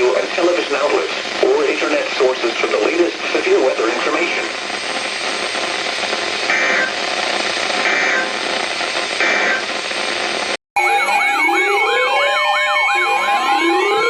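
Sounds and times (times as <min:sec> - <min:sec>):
radio static hiss: 0:00.0 - 0:10.6
short data bursts: 0:06.0 - 0:10.0
steady pulsing beeps: 0:10.8 - 0:14.0
wailing siren tones: 0:10.8 - 0:14.0.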